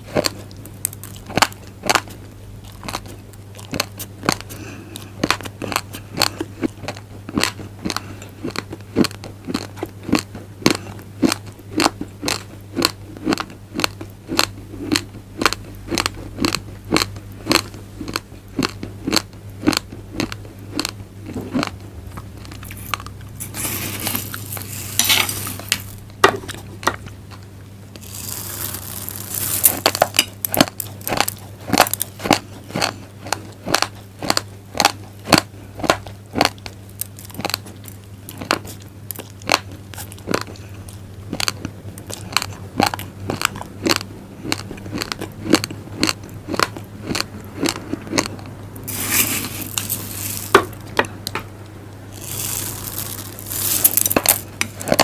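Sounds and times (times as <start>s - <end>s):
low steady hum: 0.0s - 55.0s
rice grains crunched between teeth: 22.4s - 26.0s, 28.0s - 37.7s, 41.4s - 50.7s, 52.1s - 55.0s.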